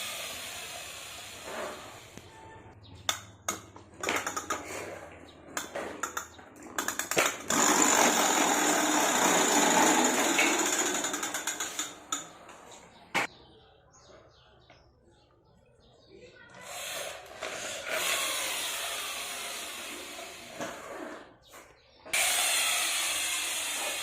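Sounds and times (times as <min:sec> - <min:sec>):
plastic toy clicks: 0:03.1 - 0:04.6, 0:05.6 - 0:07.6, 0:09.3 - 0:12.3
fast mechanical rattle: 0:06.8 - 0:12.3.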